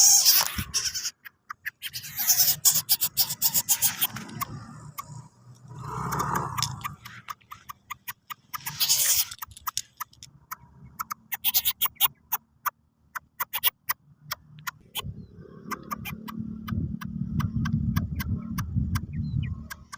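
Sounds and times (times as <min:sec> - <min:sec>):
bird hissing: 0:00.0 - 0:01.2, 0:01.8 - 0:07.2, 0:08.6 - 0:09.5
bird making sharp clicks: 0:00.1 - 0:19.9.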